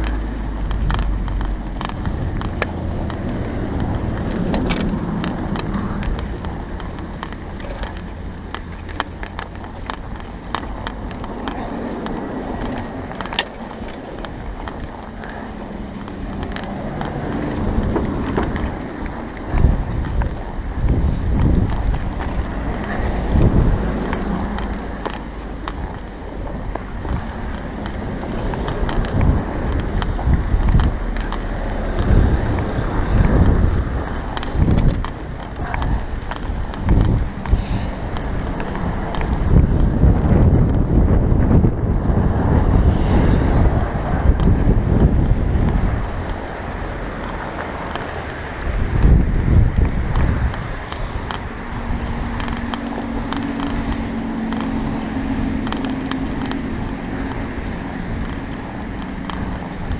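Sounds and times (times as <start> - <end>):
low rumble of bicycle ride: 0.0 - 59.9
wind buffeting microphone: 0.0 - 59.9.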